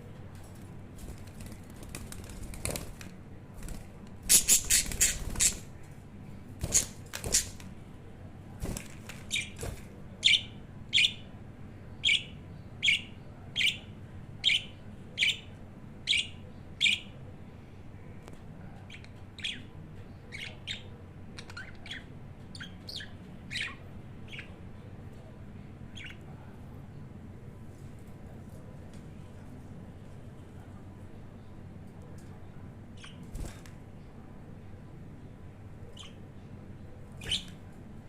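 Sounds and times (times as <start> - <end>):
budgie wing flapping: 1.0 - 5.7, 6.6 - 7.7, 8.6 - 9.9, 33.2 - 33.7.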